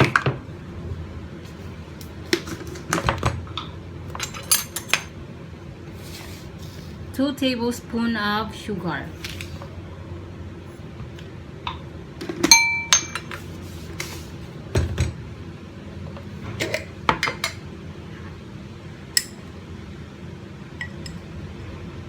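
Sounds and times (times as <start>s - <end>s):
metal spoon clinking on dishes: 12.5s - 13.4s.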